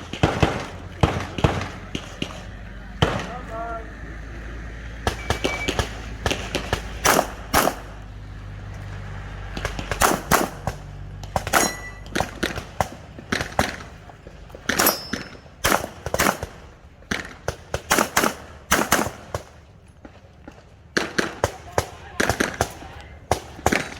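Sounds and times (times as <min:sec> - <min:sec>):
handgun shots: 0:05.1 - 0:07.9, 0:11.4 - 0:13.9, 0:14.7 - 0:16.5.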